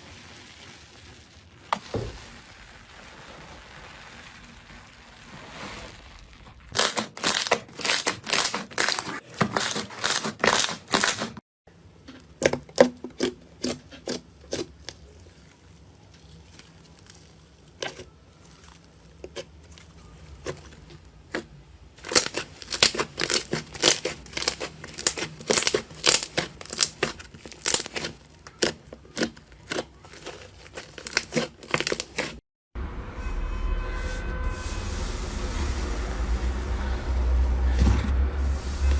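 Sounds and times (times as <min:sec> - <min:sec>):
slime crackling and popping: 0:00.0 - 0:09.0, 0:13.2 - 0:32.4.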